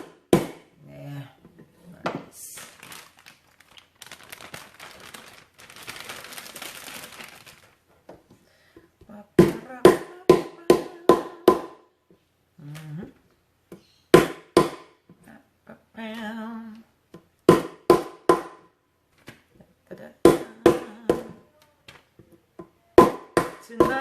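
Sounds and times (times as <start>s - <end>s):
person humming: 9.0s - 11.5s, 12.6s - 13.2s, 15.2s - 16.9s, 19.8s - 21.8s, 23.6s - 24.0s.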